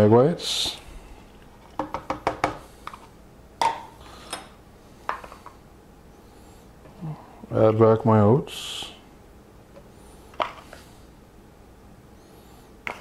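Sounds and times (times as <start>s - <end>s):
kitchen containers clicking and tapping: 1.7s - 3.0s.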